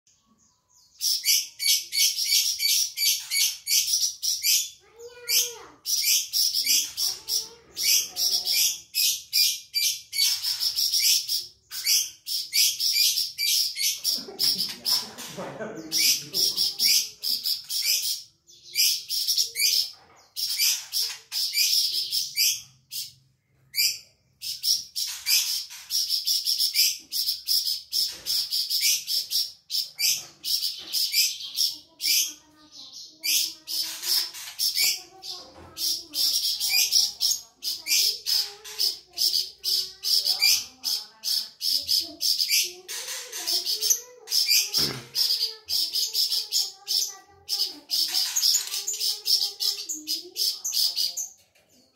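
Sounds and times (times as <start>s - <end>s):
songbird singing: 0.1s - 14.8s.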